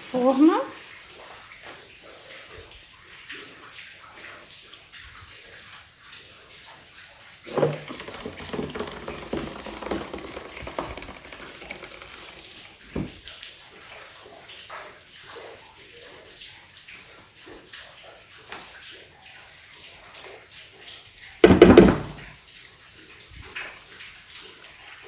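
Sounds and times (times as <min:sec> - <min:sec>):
utensil scraping jar: 0:07.5 - 0:13.1
knock against jar: 0:07.5 - 0:13.2, 0:21.4 - 0:22.3
batter pouring and sloshing: 0:07.5 - 0:13.4.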